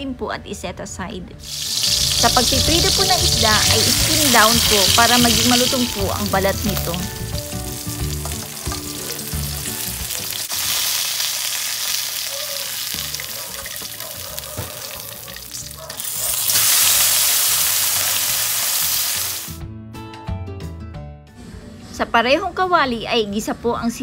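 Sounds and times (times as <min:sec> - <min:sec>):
fish sizzling in hot oil: 0:01.4 - 0:19.6.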